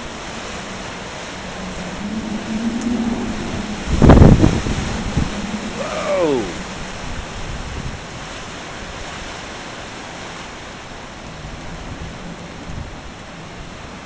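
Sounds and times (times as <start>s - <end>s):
strong wind blowing: 0.0s - 9.2s
wind buffeting microphone: 0.0s - 9.4s.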